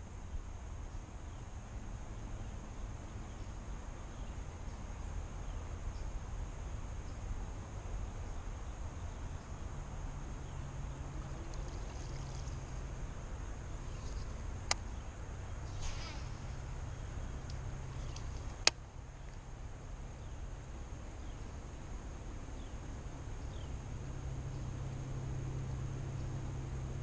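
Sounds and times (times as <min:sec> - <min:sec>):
sharp click: 0:17.4 - 0:19.4.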